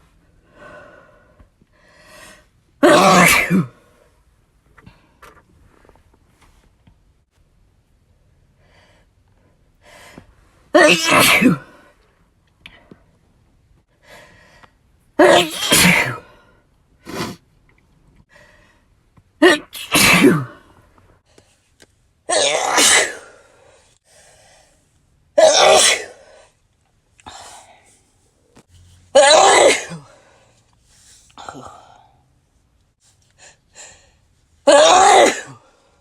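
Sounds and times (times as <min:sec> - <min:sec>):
person sneezing: 0:02.8 - 0:03.8, 0:10.8 - 0:11.8, 0:15.2 - 0:16.3, 0:17.0 - 0:17.4, 0:19.4 - 0:20.6, 0:22.3 - 0:23.4, 0:25.4 - 0:26.3, 0:29.2 - 0:30.2, 0:34.7 - 0:35.7.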